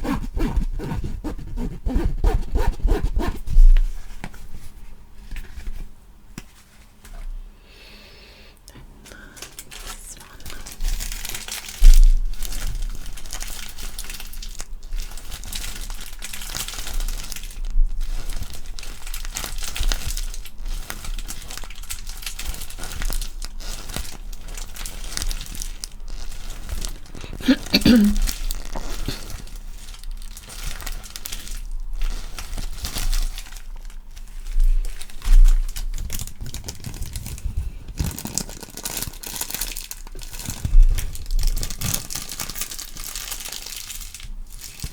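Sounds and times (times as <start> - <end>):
close-up crinkling and crumpling: 9.4 - 44.9.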